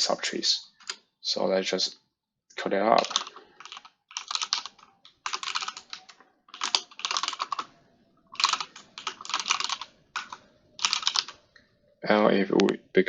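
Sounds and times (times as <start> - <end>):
keyboard typing: 3.0 - 11.7.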